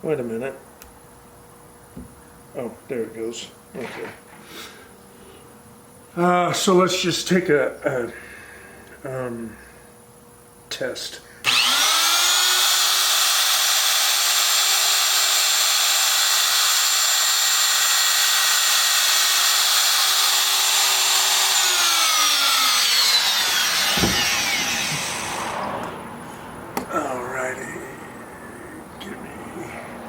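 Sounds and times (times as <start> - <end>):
router motor whine: 11.4 - 26.0
single knock: 24.0 - 24.2.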